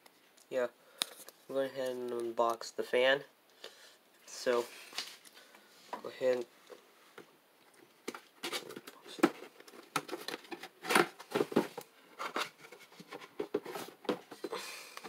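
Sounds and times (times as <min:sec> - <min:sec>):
cardboard rustling and scraping: 0:08.1 - 0:14.6.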